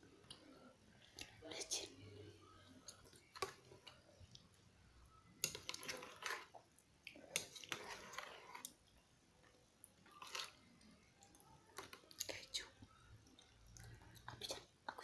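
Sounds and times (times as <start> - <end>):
chewing and wet mouth noises: 10.0 - 15.0.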